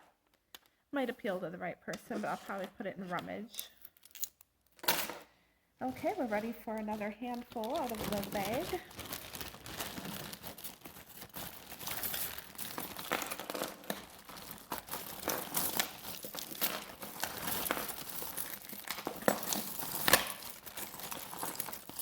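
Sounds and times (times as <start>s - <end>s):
plastic bag crinkling: 5.8s - 22.0s.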